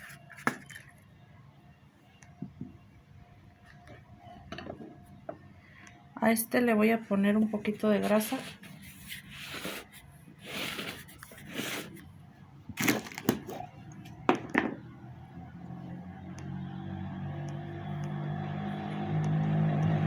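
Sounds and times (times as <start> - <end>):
rustling of metal parts: 0.0 - 1.0, 12.8 - 13.7
low engine hum: 13.8 - 20.0.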